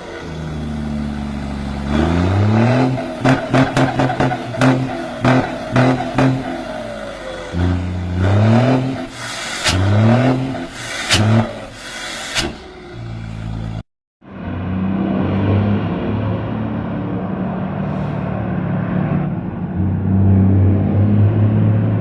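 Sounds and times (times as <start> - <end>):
sharp exhaust cracks: 7.5 - 13.1.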